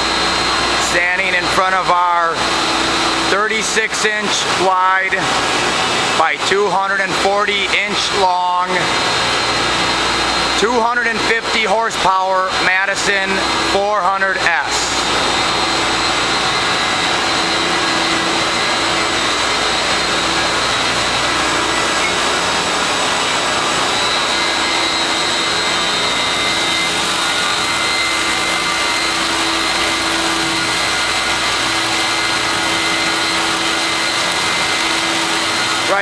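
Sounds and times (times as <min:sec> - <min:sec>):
surface grinder grinding steel: 0:14.2 - 0:36.0.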